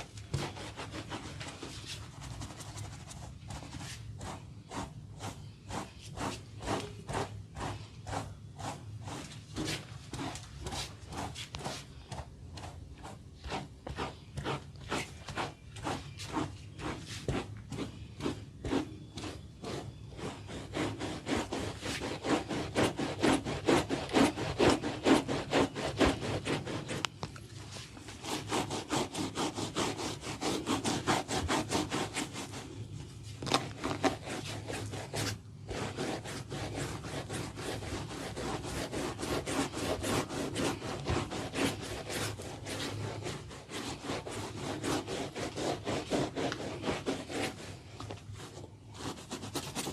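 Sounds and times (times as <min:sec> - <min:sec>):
hands scratching scalp: 0:00.0 - 0:32.6.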